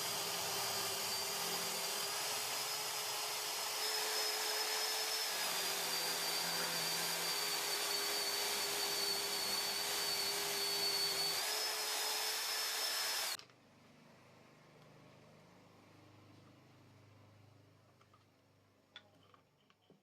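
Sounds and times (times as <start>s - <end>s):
electric drill whining: 0.0s - 13.4s.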